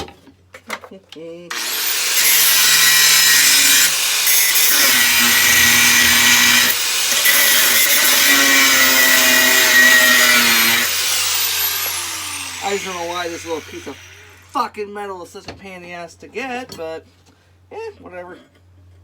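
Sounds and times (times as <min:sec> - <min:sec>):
power tool cutting steel: 0:01.5 - 0:14.6.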